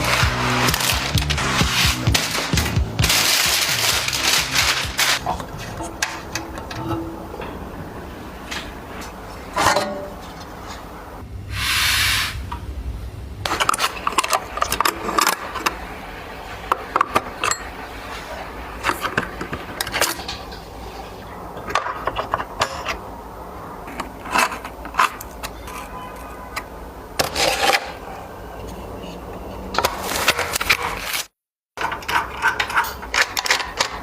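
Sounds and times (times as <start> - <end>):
short hiss: 11.5 - 12.5
hard parts clicking and knocking: 31.8 - 34.0.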